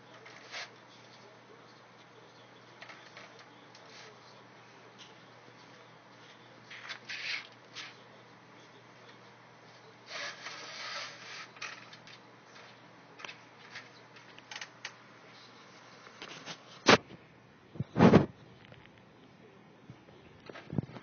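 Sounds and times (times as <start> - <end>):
cat scratching and rubbing: 0.0 - 1.2, 5.6 - 8.0, 10.1 - 12.8.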